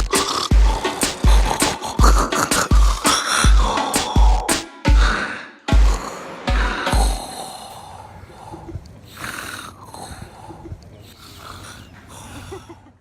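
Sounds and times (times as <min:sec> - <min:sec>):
bass drum beats: 0:00.0 - 0:07.3
man snoring: 0:00.0 - 0:12.6.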